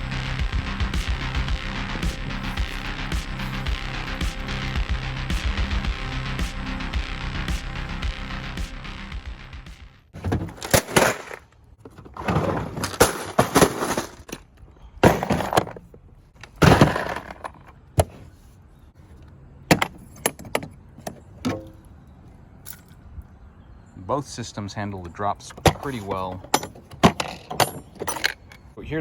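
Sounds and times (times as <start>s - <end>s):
plastic cases crashing to ground: 10.2s - 18.3s
small parts rattling inside: 10.2s - 21.9s, 25.4s - 28.8s.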